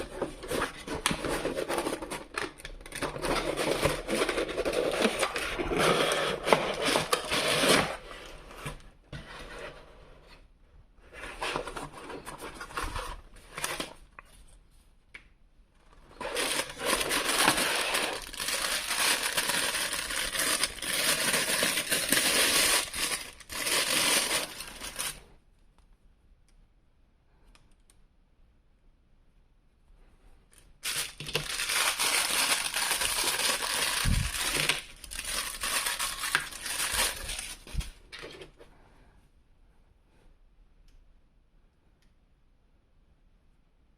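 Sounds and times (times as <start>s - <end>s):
cardboard and plastic crinkling: 0.0s - 8.8s, 15.9s - 25.3s, 30.8s - 38.6s.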